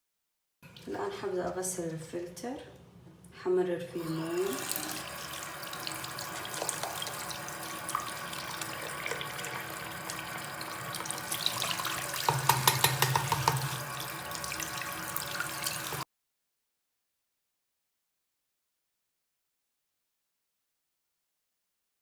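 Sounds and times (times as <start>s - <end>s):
tap water running into sink: 4.0s - 16.0s
knocks: 12.3s - 13.8s.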